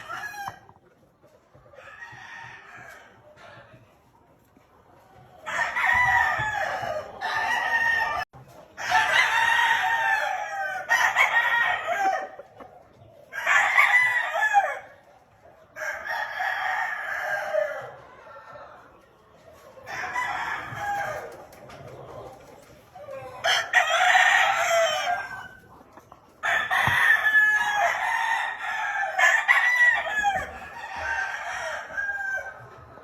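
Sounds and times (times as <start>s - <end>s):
roosters crowing: 0.0s - 0.8s, 1.8s - 3.1s, 5.4s - 12.5s, 13.3s - 14.9s, 15.8s - 18.8s, 19.8s - 21.4s, 22.9s - 25.7s, 26.4s - 33.0s.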